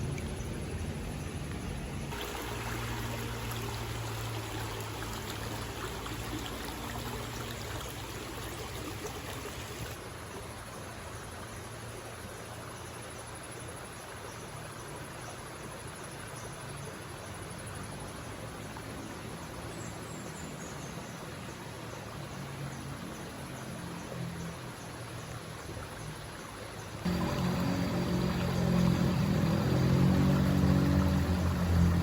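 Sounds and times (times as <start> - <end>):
river water rushing over stones: 1.6 - 10.2, 26.2 - 32.0.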